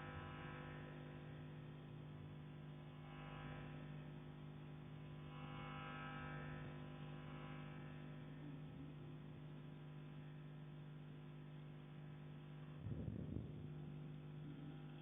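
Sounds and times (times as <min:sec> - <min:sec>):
steady low hum: 0:04.7 - 0:15.0.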